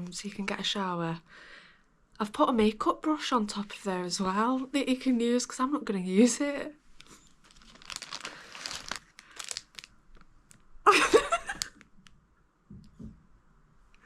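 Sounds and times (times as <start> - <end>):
rustling and crinkling handling: 6.9 - 12.1.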